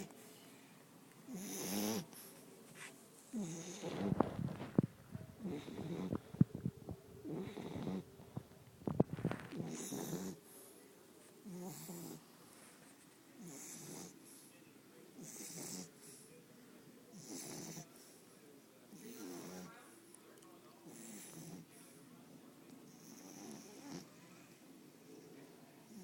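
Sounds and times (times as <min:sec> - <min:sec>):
puppy snoring: 0:01.3 - 0:02.4, 0:03.3 - 0:04.8, 0:05.4 - 0:08.4, 0:09.0 - 0:10.6, 0:11.4 - 0:12.3, 0:13.4 - 0:14.5, 0:15.1 - 0:16.3, 0:17.1 - 0:18.2, 0:18.9 - 0:19.9, 0:20.8 - 0:22.0, 0:22.8 - 0:24.3.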